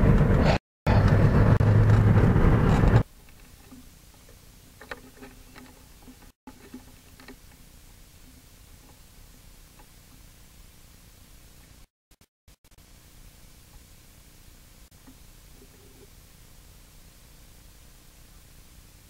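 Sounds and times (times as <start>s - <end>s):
car road and engine noise: 0.0s - 3.8s
faint hiss: 12.7s - 19.0s.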